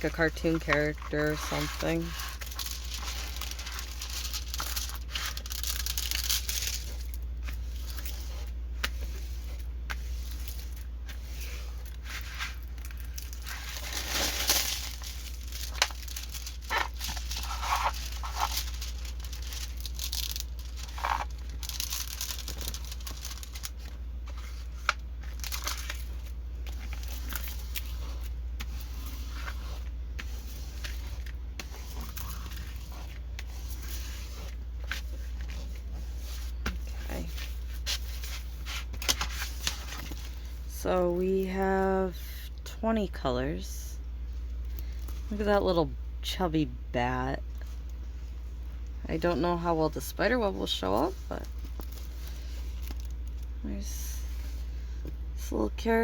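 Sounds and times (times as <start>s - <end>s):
plastic packaging crinkling: 0.0s - 40.6s, 50.3s - 53.5s
steady low hum: 0.0s - 56.0s.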